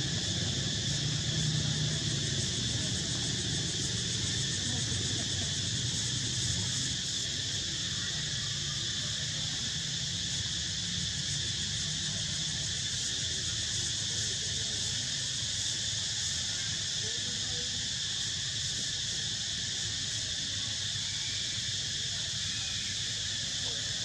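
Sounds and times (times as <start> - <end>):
insects droning: 0.0 - 24.0.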